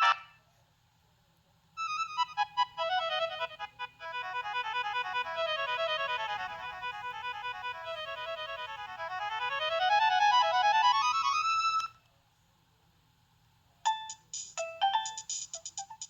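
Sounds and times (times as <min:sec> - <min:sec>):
electronic ringtone notes: 0:13.9 - 0:16.0.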